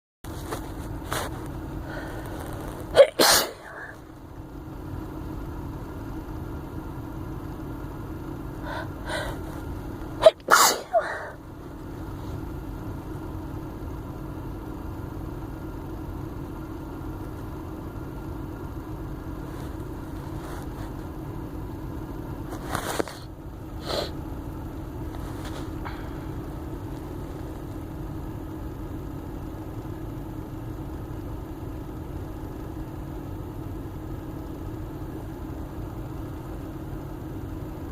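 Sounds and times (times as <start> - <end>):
steady low hum: 0.3 - 37.9
catching breaths: 1.7 - 2.8, 8.6 - 11.4, 25.2 - 26.6
woman sneezing: 2.9 - 4.0, 10.2 - 11.4.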